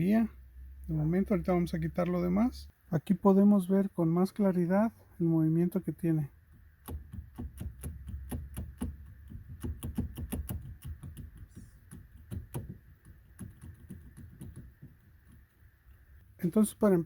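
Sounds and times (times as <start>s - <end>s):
steering shaft clicking and knocking: 6.4s - 16.9s.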